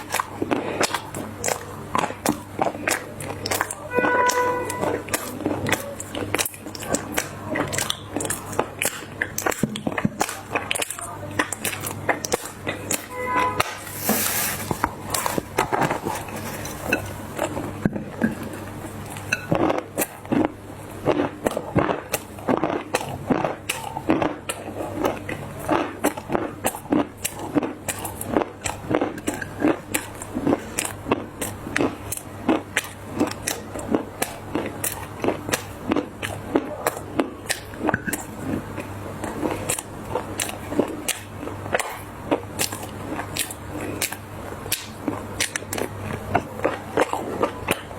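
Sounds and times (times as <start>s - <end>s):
dried clay crunching: 13.7s - 17.7s.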